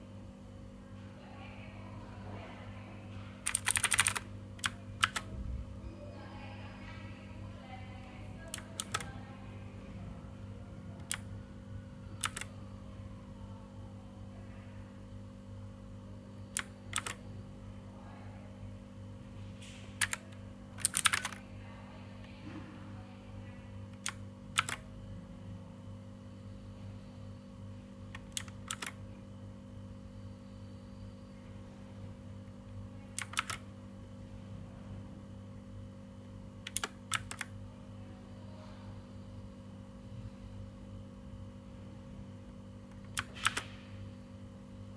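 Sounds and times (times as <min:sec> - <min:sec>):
steady low hum: 0:00.0 - 0:44.9
mechanical keyboard keys clicking: 0:03.4 - 0:05.3, 0:08.5 - 0:09.1, 0:11.0 - 0:11.3, 0:12.2 - 0:12.5, 0:16.5 - 0:17.2, 0:20.0 - 0:21.4, 0:24.0 - 0:24.8, 0:28.1 - 0:29.0, 0:33.1 - 0:33.6, 0:36.6 - 0:37.5, 0:42.9 - 0:43.7.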